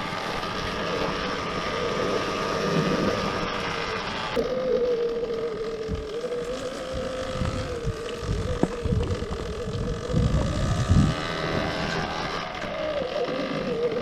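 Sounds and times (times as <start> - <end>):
electric motor whine: 0.0 - 14.0
wind buffeting microphone: 5.8 - 12.8.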